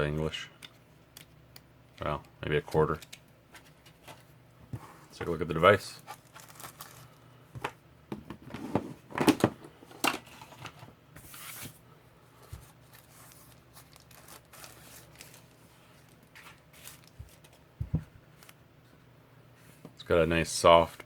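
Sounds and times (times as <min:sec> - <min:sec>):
packaging rustling and tearing: 0:06.0 - 0:07.2, 0:12.8 - 0:17.6.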